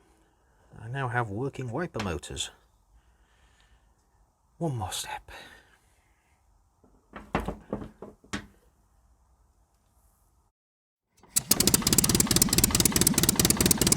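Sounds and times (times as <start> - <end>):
truck engine running: 11.2 - 13.9.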